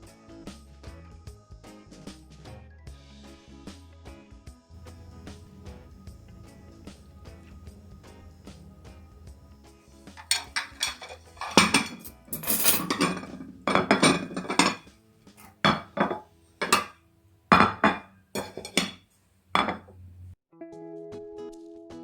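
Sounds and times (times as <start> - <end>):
cutlery scraping dishes: 4.8 - 9.3, 10.2 - 19.0, 19.6 - 20.3
dishes and cutlery clinking: 4.8 - 9.5, 10.2 - 19.0, 19.6 - 20.4.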